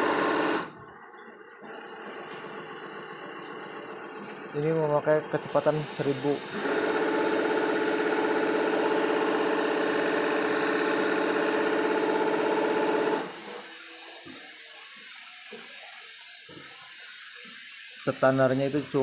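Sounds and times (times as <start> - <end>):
linking machine hum: 0.0 - 13.6.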